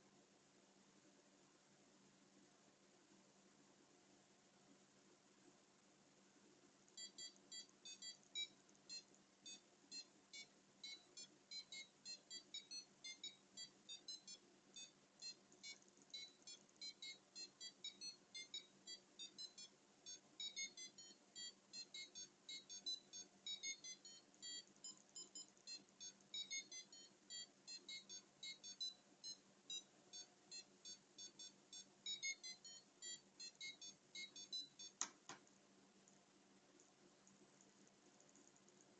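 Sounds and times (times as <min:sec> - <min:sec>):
alarm clock buzzer beeps: 0:07.0 - 0:35.0.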